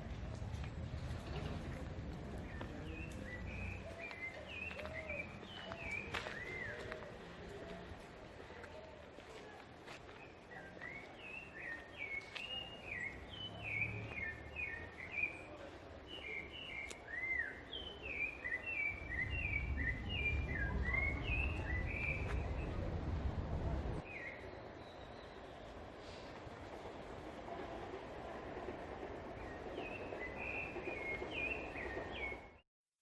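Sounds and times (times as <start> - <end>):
outdoor background noise: 0.0 - 32.6
small birds chirping: 10.0 - 22.9
low rumble: 18.9 - 24.0.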